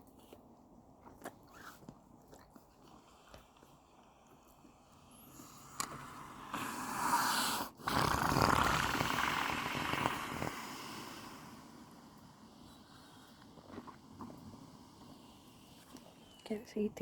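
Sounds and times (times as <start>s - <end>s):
horse snoring: 5.2s - 16.5s.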